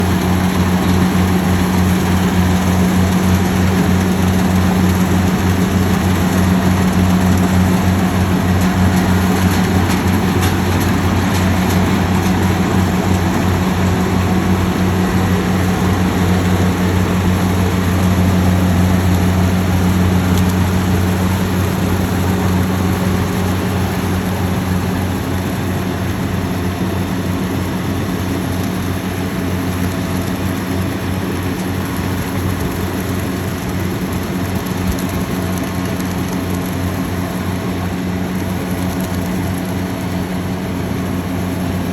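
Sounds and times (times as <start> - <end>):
harvester engine humming: 0.0 - 41.9.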